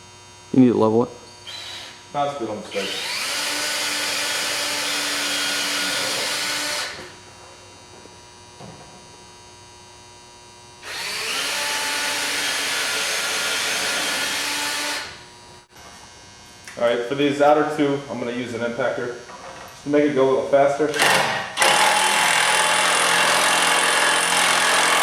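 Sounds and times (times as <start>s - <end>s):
electric drill boring into wood: 1.4s - 2.0s, 2.7s - 7.1s, 10.8s - 15.2s, 20.9s - 25.0s.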